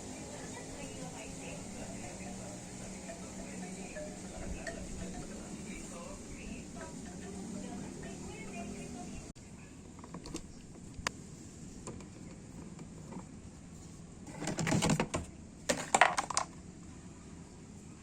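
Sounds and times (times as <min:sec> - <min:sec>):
rattling clatter of parts: 0:14.2 - 0:16.6.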